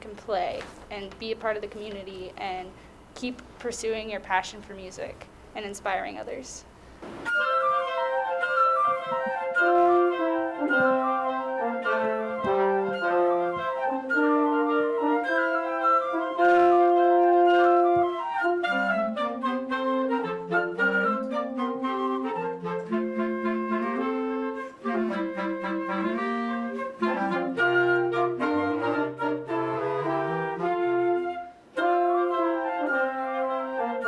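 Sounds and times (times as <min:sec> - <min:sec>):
wind band playing: 0:07.2 - 0:34.0.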